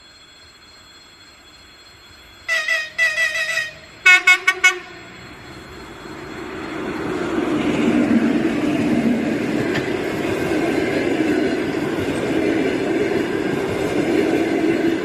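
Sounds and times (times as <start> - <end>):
approaching train rumble: 0.1 - 15.0
locomotive horn blasts: 2.5 - 5.2.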